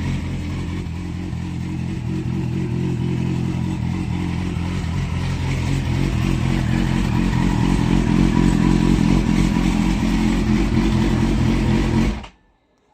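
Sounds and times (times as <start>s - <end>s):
motorcycle engine running: 0.0s - 12.3s.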